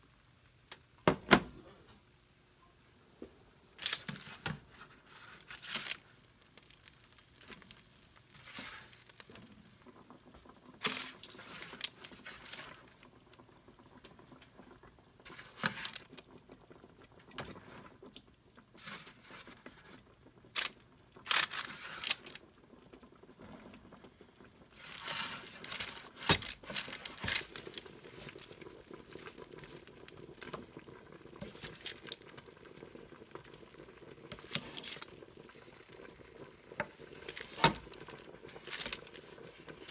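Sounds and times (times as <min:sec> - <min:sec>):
packaging crinkling: 0:03.8 - 0:09.4, 0:10.8 - 0:12.9, 0:15.3 - 0:16.2, 0:20.6 - 0:22.4, 0:24.8 - 0:39.9.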